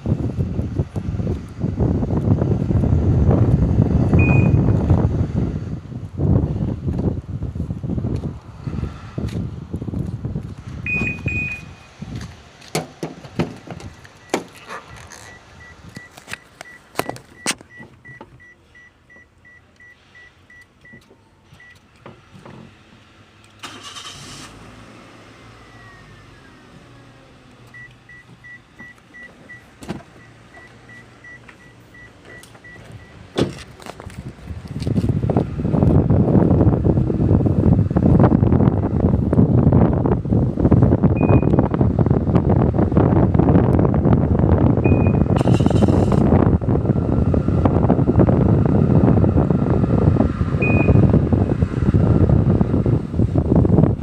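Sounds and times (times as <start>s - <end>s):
car engine cranking and idling: 0.0s - 54.0s
high warning chime: 4.2s - 4.7s, 10.9s - 11.9s
car alarm beep: 4.2s - 4.8s, 10.9s - 11.9s, 13.9s - 21.8s, 27.7s - 33.2s, 41.2s - 41.6s, 44.8s - 45.4s, 50.6s - 51.1s.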